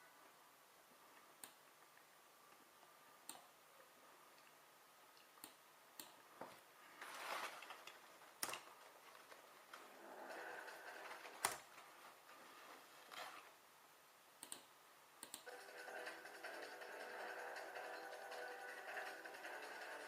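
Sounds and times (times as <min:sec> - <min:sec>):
sharp clicks: 0:05.2 - 0:06.2, 0:14.4 - 0:15.5.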